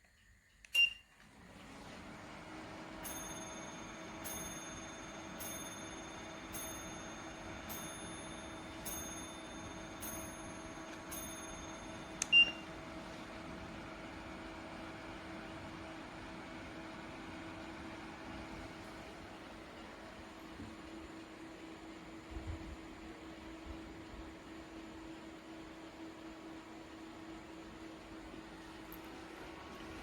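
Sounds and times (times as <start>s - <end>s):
fan heater whooshing: 1.3s - 3.2s, 5.4s - 25.2s, 27.6s - 30.0s
sharp beep: 12.3s - 12.6s.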